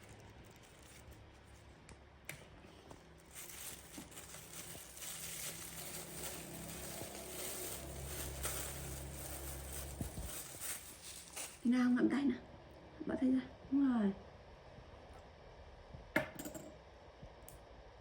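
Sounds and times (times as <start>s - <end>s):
plastic bag crinkling: 0.0s - 1.9s, 2.7s - 11.8s.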